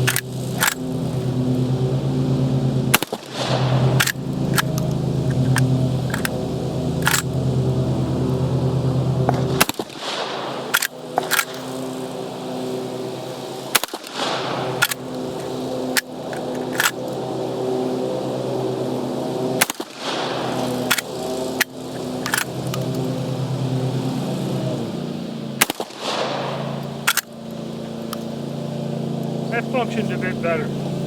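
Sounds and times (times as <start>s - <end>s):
engine hum: 0.0s - 31.0s
shotgun lever clacking: 7.0s - 7.3s.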